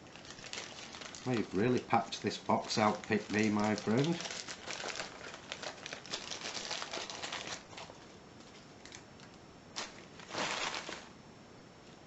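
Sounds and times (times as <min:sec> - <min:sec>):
small hard items clicking: 0:00.0 - 0:07.9
packaging rustling: 0:00.0 - 0:11.1.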